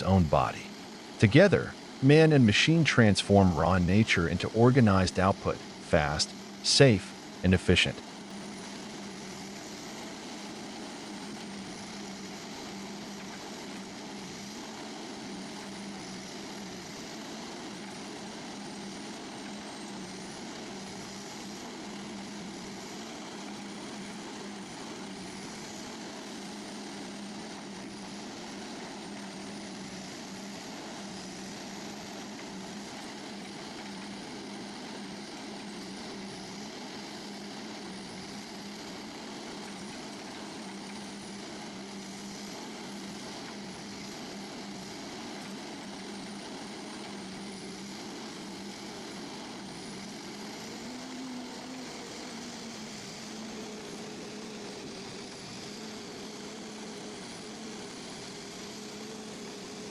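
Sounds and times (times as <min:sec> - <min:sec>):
heavy machine engine droning: 0:00.0 - 0:13.8.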